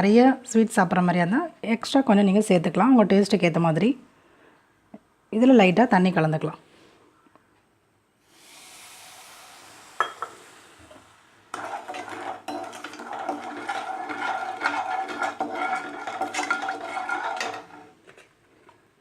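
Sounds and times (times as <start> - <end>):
spoon stirring and clinking: 11.5 - 18.0.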